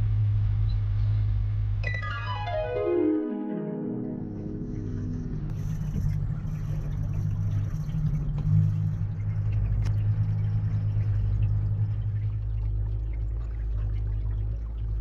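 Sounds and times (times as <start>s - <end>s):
boat motor droning: 4.2s - 15.0s.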